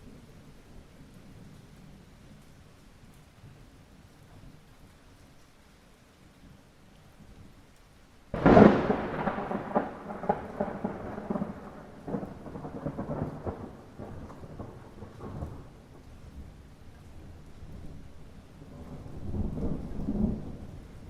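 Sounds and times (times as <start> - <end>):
mild rain: 0.0 - 21.0
thunderclap with crackling rumble: 8.3 - 21.0.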